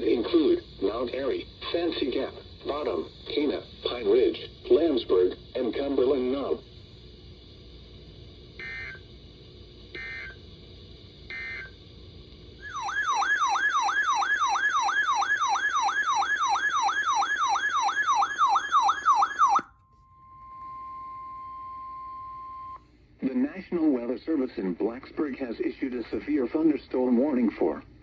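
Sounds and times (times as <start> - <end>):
low hum: 6.6 - 22.9
steady alarm tone: 8.6 - 9.0, 10.0 - 10.4, 11.3 - 11.7, 12.6 - 22.8
electronic warbling siren: 12.6 - 22.8.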